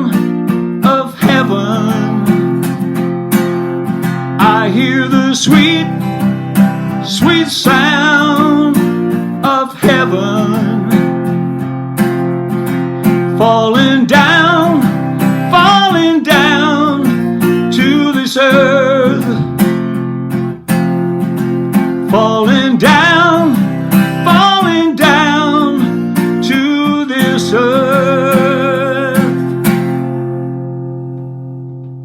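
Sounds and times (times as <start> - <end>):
person singing wordless notes: 0.0 - 2.6, 4.4 - 6.2, 6.8 - 11.2, 13.3 - 19.6, 22.1 - 29.6
acoustic guitar strumming blues: 0.0 - 32.0.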